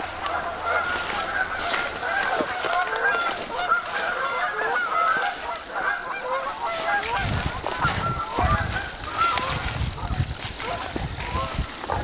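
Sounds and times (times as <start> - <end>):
flock of birds honking: 0.0 - 12.0.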